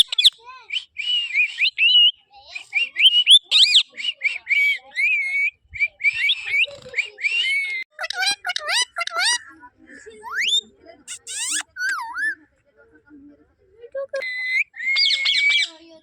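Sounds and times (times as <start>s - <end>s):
parrot chirping and whistling: 10.3s - 12.4s.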